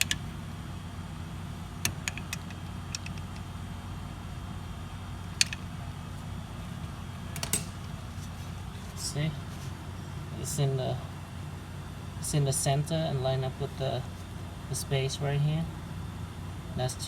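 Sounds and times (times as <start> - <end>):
steady low hum: 0.0 - 17.0
light metallic clicks and taps: 1.8 - 3.5.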